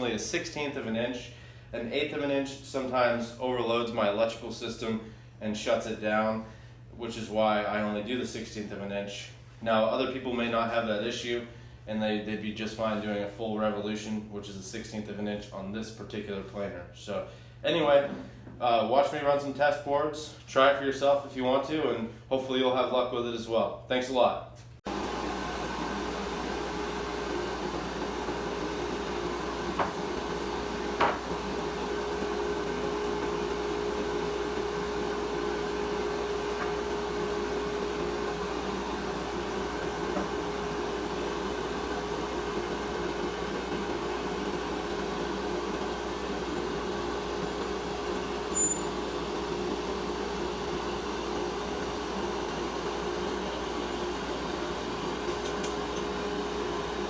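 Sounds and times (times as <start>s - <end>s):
thickness planer humming: 24.9s - 57.0s.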